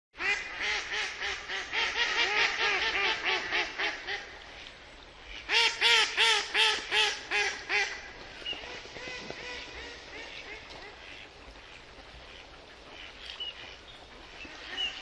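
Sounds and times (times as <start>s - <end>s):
duck quacking: 0.2s - 4.3s, 9.0s - 13.8s.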